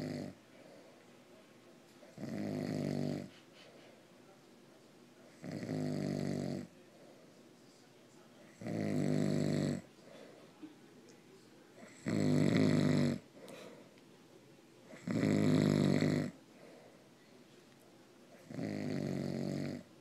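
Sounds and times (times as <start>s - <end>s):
man snoring: 0.0s - 0.4s, 2.2s - 3.3s, 5.4s - 6.7s, 8.6s - 9.9s, 11.9s - 13.2s, 15.0s - 16.4s, 18.5s - 19.9s.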